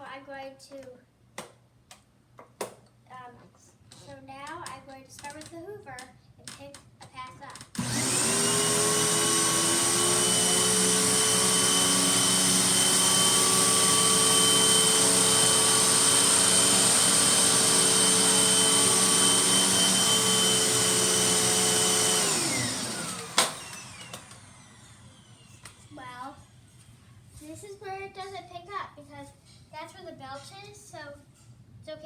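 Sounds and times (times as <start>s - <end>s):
upright vacuum cleaner running: 7.8s - 26.6s.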